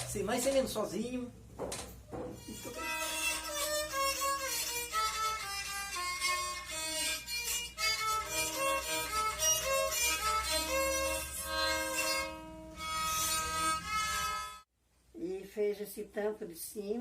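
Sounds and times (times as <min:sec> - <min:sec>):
bowed fiddle melody: 0:02.4 - 0:14.7.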